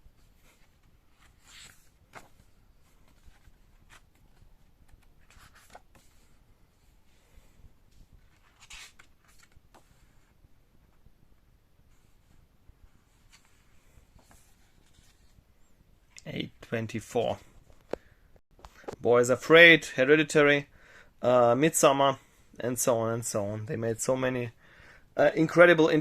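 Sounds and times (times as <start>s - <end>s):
paper rustling: 0.2s - 6.9s, 8.0s - 10.3s.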